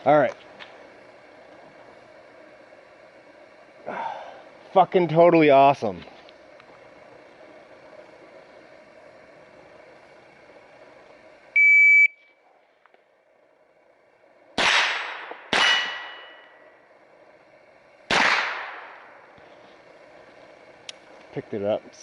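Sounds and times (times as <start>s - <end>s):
shot timer beep: 11.6s - 12.3s
rifle shots: 14.6s - 16.4s, 18.1s - 19.0s.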